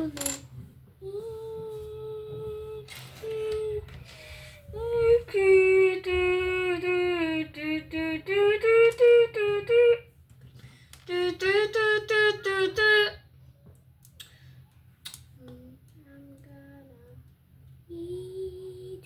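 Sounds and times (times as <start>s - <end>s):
child singing and humming: 1.0s - 10.1s, 11.1s - 13.2s, 15.4s - 19.0s.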